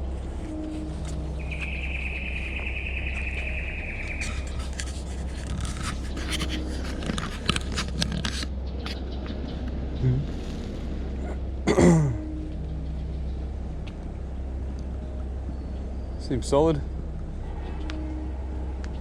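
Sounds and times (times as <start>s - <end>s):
steady low rumble: 0.0s - 19.0s
footsteps crackling on dry leaves: 0.1s - 8.0s.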